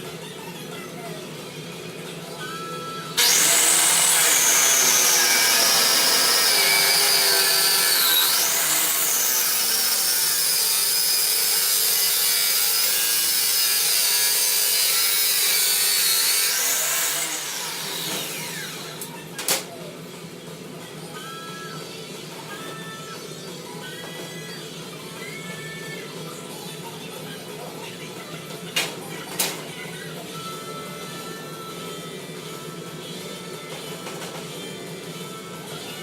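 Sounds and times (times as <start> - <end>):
power tool grinding steel: 3.2 - 19.1.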